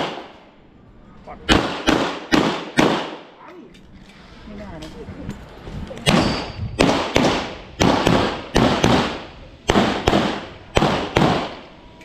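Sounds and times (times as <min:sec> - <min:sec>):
handgun shots echoing: 0:01.5 - 0:03.2.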